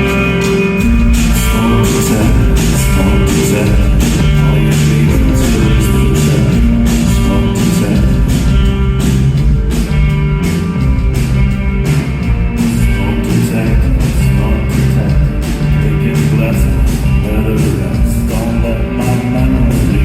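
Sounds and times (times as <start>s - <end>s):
drum kit beat: 0.0s - 20.0s
guitar and bass tones: 0.0s - 20.0s.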